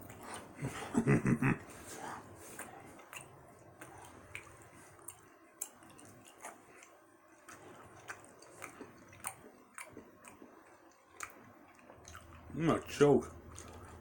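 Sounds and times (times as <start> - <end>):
person chewing gummy candy: 2.2 - 14.0
wet mouth clicks and smacks: 2.5 - 12.5.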